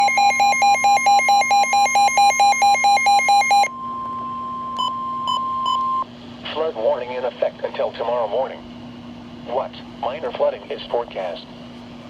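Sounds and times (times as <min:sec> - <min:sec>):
pulsing two-tone electronic alarm: 0:00.0 - 0:06.0
short beeps: 0:00.0 - 0:06.0
steady attention tone: 0:00.0 - 0:06.0.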